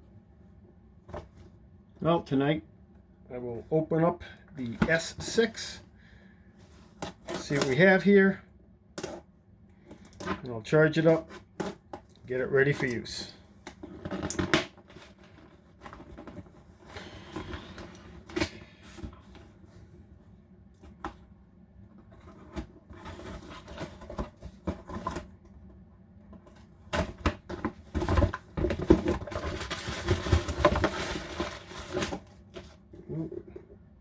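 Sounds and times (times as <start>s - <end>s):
packaging rustling and scraping: 12.7s - 20.1s, 21.9s - 25.4s, 26.3s - 33.6s.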